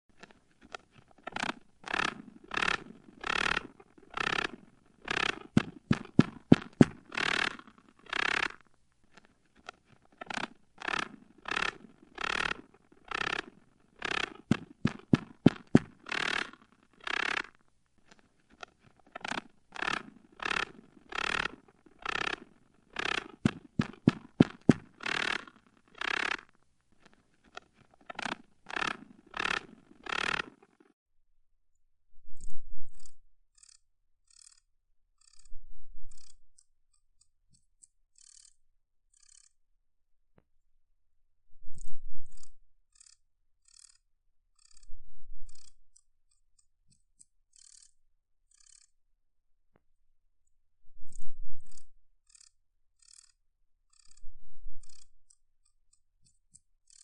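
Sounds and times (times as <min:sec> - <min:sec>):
rasping scrapes: 0:00.2 - 0:30.9
sharp clicks: 0:00.2 - 0:30.9.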